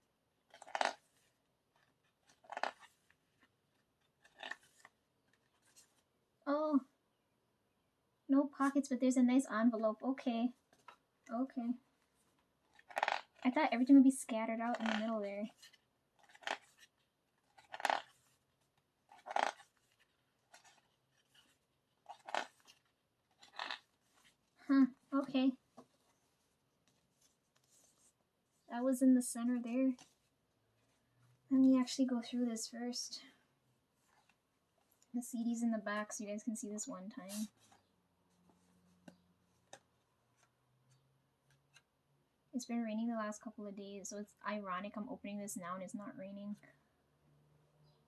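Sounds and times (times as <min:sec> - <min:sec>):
paper rustling: 0:00.4 - 0:06.1, 0:10.6 - 0:11.1, 0:11.9 - 0:28.6, 0:37.3 - 0:40.6
cardboard packaging rustling: 0:14.6 - 0:24.6.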